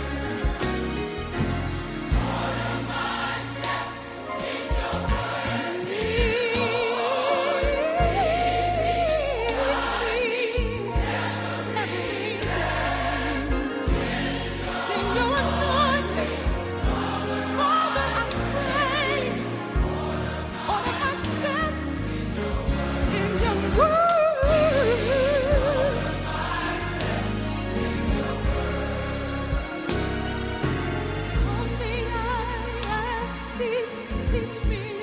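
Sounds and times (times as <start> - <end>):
band with bass and drums: 0.0 - 2.9
gospel choir singing: 0.0 - 35.0.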